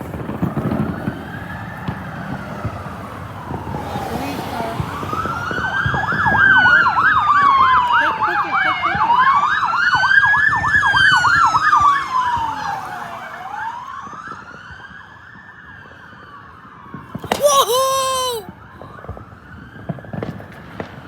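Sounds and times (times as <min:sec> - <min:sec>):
police siren wail: 0:00.8 - 0:15.0.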